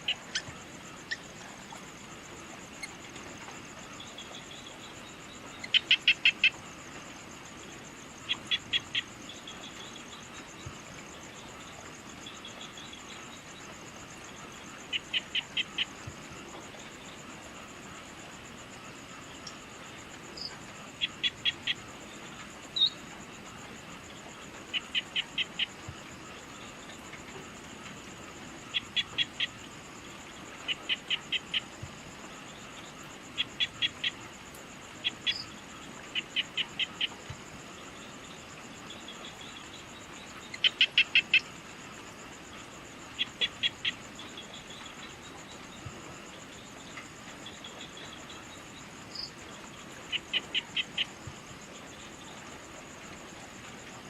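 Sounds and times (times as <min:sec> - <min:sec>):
high fast insect trill: 0:00.0 - 0:54.0.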